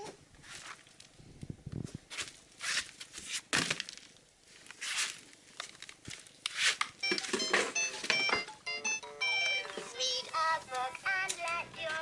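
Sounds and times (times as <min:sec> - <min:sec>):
rustling and scuffing handling noise: 0:00.0 - 0:01.2, 0:01.8 - 0:08.5.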